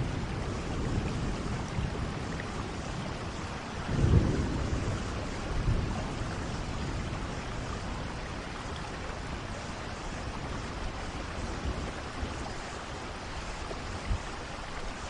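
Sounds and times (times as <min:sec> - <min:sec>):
thunder rumbling: 0:00.0 - 0:09.4
steady rain falling: 0:00.0 - 0:15.0.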